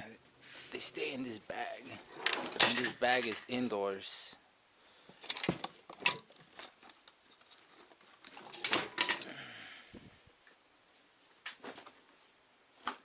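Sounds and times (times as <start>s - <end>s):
metal hand tools clinking: 2.5s - 3.5s.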